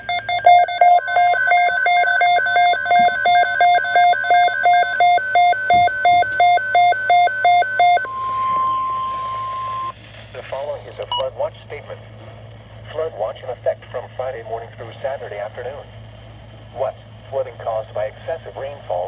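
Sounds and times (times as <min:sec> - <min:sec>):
steady alert tone: 0:00.0 - 0:09.0
two-note electronic alarm beeping: 0:00.0 - 0:09.9.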